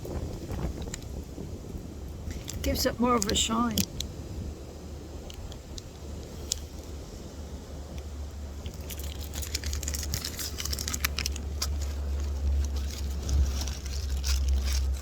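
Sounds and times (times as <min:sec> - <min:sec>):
wind rumble on microphone: 0:00.0 - 0:15.0
packaging crinkling and clicking: 0:08.6 - 0:15.0.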